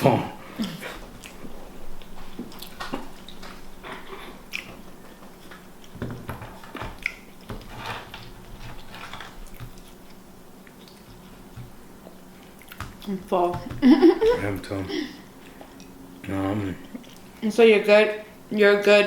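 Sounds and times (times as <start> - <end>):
person chewing: 0.6 - 6.0, 6.6 - 13.1, 15.4 - 17.4.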